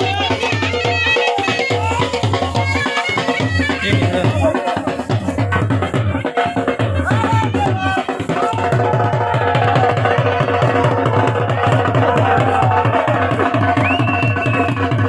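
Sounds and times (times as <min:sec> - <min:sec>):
drum beating fast rhythm: 0:00.0 - 0:15.0
wind instrument folk melody: 0:00.0 - 0:15.0.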